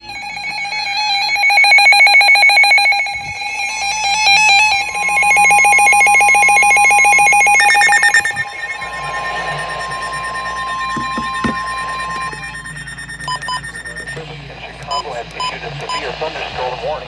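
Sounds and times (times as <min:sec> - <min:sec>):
steady alarm tone: 0:00.0 - 0:16.1
higher radio beeping: 0:00.0 - 0:16.2
rapid electronic beeping: 0:00.0 - 0:16.2.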